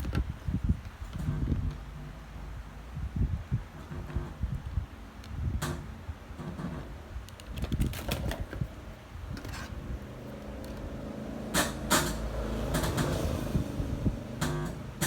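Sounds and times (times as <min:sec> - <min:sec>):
things being handled clicking: 0:06.4 - 0:09.8.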